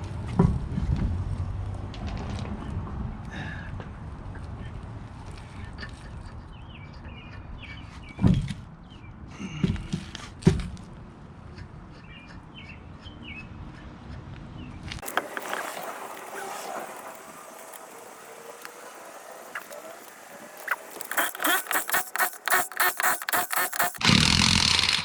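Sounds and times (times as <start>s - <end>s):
small birds chirping: 11.5s - 24.0s
hiss with scattered clicks: 15.0s - 24.0s.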